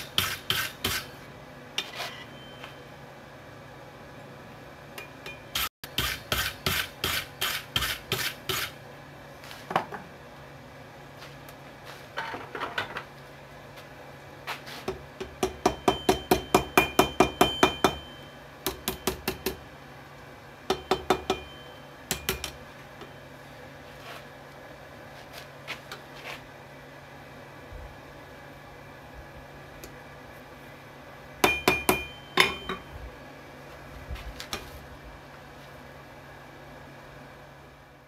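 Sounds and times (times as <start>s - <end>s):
hammer striking anvil: 15.2s - 19.6s, 20.7s - 22.6s, 31.4s - 32.9s
anvil ringing: 15.4s - 19.6s, 20.7s - 22.5s, 31.4s - 32.9s.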